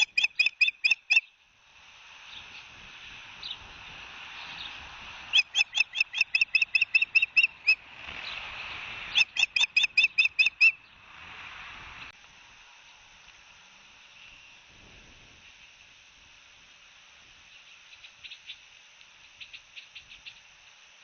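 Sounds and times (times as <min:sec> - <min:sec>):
osprey whistled chirps: 0:00.0 - 0:01.3, 0:05.3 - 0:07.8, 0:09.1 - 0:10.8
background hiss: 0:00.0 - 0:21.0.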